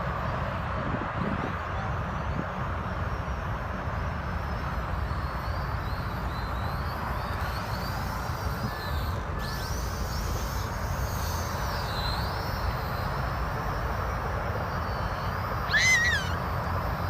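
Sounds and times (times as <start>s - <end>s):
wind rumbling on microphone: 0.0s - 4.8s
faint high chirps: 14.8s - 16.4s.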